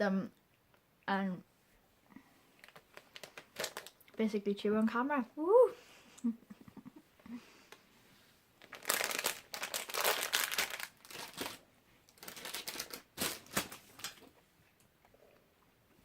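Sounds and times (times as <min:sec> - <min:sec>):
plastic packet crinkling: 0:02.6 - 0:04.2, 0:08.6 - 0:14.3.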